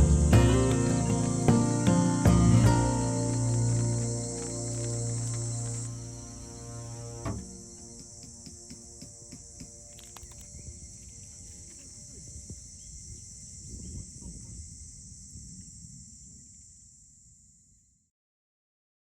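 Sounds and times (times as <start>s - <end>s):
high-pitched insect chorus: 0.0s - 18.0s.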